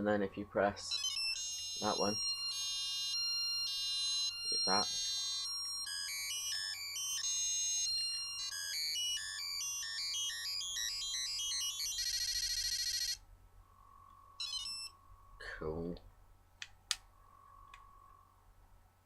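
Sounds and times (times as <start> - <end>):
toy beeping tones: 0.8 - 13.2, 14.4 - 15.0
toy buzzing tone: 0.8 - 13.2, 14.4 - 15.0.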